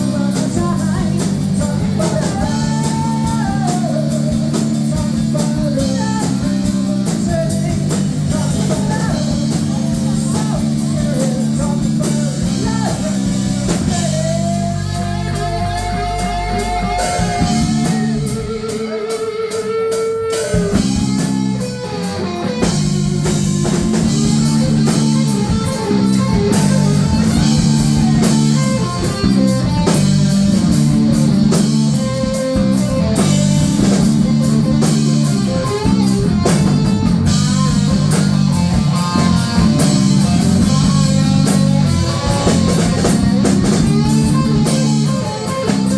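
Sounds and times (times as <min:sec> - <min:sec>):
rock music: 0:00.0 - 0:45.9
sustained guitar notes: 0:12.5 - 0:45.9.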